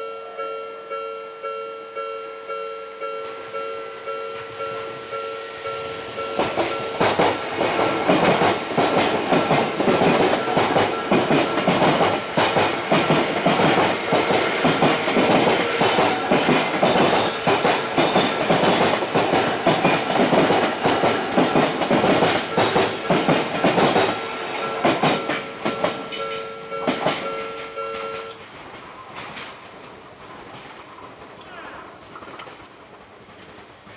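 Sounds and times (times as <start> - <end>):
level crossing warning bell: 0.0 - 28.4
train wheels clattering over rail joints: 5.9 - 31.4.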